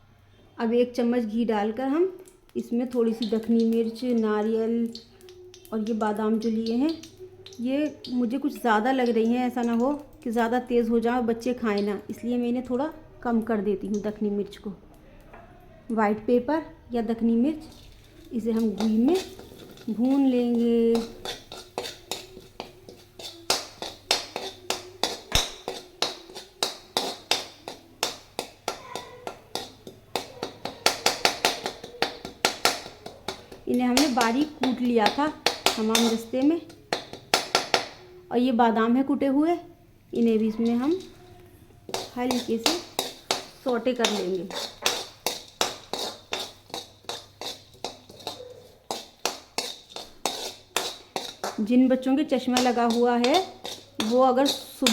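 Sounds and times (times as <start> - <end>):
metal spoon clinking on pan: 17.7 - 38.2, 40.2 - 41.3, 41.9 - 54.9.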